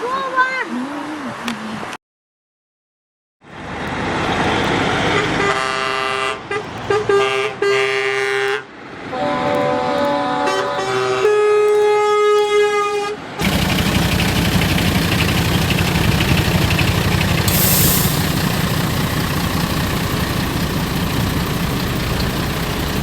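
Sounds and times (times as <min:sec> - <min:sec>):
vehicle horn: 0:05.1 - 0:18.4
short hiss: 0:13.4 - 0:21.1
vehicle rumble: 0:13.4 - 0:23.0.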